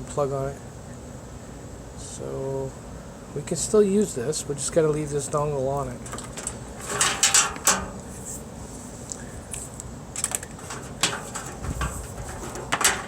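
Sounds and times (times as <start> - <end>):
computer case parts clicking: 6.0 - 8.1, 10.2 - 13.0.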